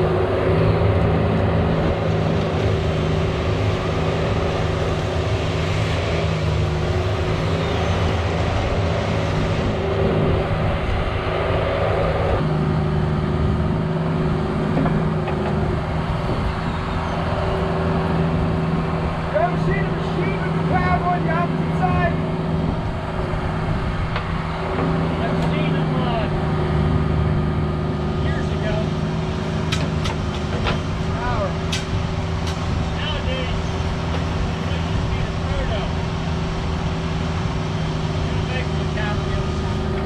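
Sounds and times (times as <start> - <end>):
excavator diesel engine running: 0.0 - 40.0.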